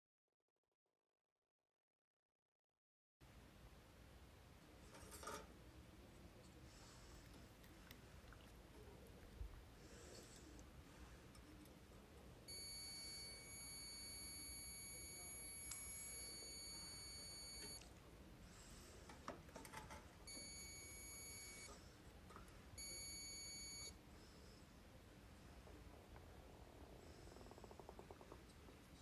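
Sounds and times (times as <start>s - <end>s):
multimeter continuity beeps: 12.5s - 17.8s, 20.3s - 21.8s, 22.8s - 24.0s.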